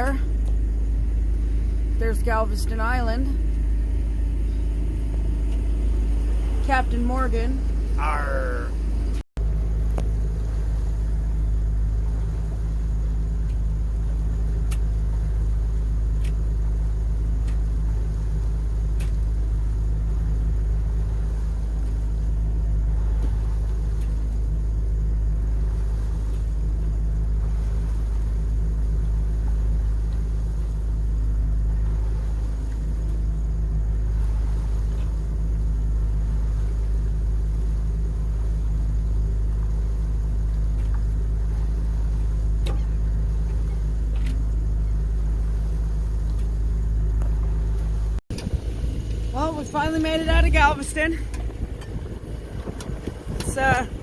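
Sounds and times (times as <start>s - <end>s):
boat engine droning: 0.0s - 54.0s.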